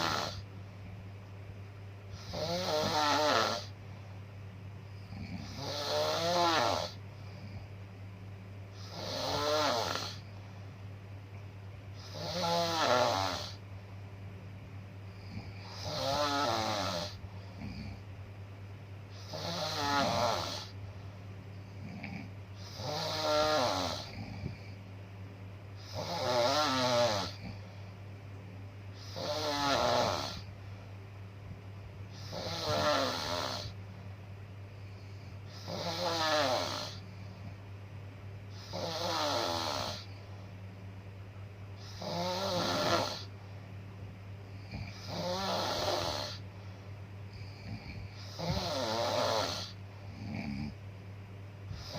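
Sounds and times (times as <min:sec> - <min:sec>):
person snoring: 0:00.0 - 0:00.5, 0:02.1 - 0:03.8, 0:05.0 - 0:07.6, 0:08.7 - 0:10.3, 0:12.0 - 0:13.6, 0:15.1 - 0:18.0, 0:19.1 - 0:20.8, 0:21.8 - 0:24.8, 0:25.8 - 0:27.8, 0:29.0 - 0:30.5, 0:32.1 - 0:33.8, 0:35.0 - 0:37.5, 0:38.5 - 0:40.2, 0:41.8 - 0:43.3, 0:44.5 - 0:46.4, 0:47.3 - 0:50.8
low steady hum: 0:00.0 - 0:51.9.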